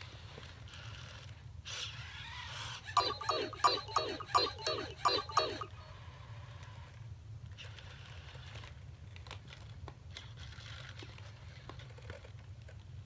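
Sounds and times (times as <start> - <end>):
robot dog plastic clicks and taps: 3.0 - 5.7.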